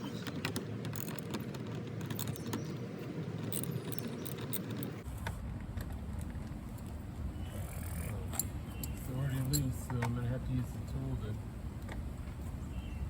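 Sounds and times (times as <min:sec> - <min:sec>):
metallic clinks of hand tools: 0:08.3 - 0:09.8.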